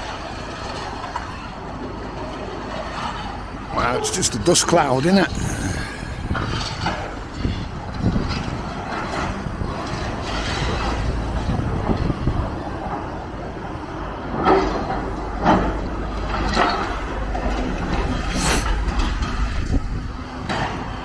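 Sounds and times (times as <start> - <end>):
demolition machinery rumbling: 0.0 - 21.0
clatter: 6.4 - 21.0.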